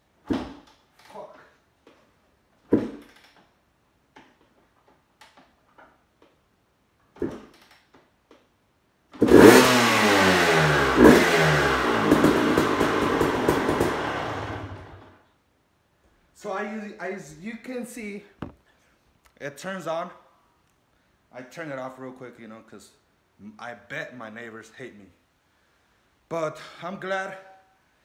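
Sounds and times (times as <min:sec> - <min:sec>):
motorcycle engine revving: 0:09.2 - 0:15.2
quiet thumps: 0:18.4 - 0:18.7.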